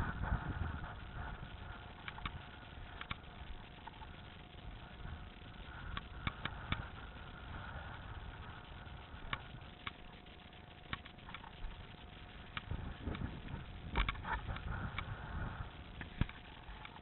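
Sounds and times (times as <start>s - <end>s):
faint steady hum: 0.0s - 17.0s
sharp clicks: 2.0s - 4.1s, 5.9s - 6.9s, 10.8s - 11.6s.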